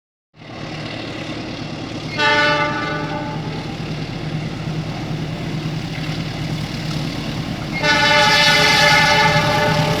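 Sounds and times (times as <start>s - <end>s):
locomotive engine hum: 0.4s - 10.0s
locomotive air horn blast: 2.1s - 3.7s, 7.7s - 10.0s.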